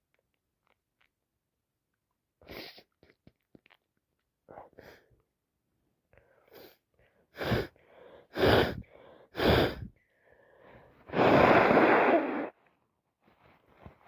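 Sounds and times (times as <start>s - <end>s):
woman blowing nose: 2.4s - 2.9s, 7.4s - 7.7s, 8.3s - 8.8s, 9.4s - 9.9s, 11.1s - 12.6s.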